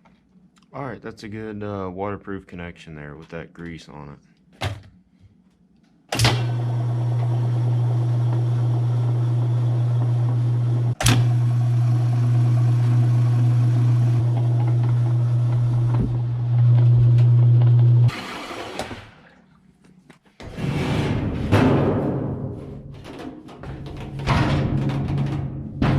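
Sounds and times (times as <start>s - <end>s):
water pump humming: 6.2s - 19.6s.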